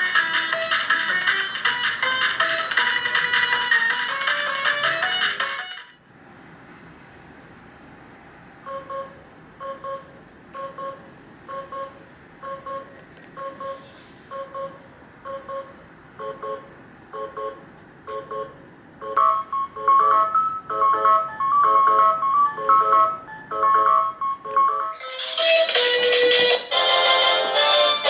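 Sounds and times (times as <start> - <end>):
alarm clock beeping: 18.2 - 25.0.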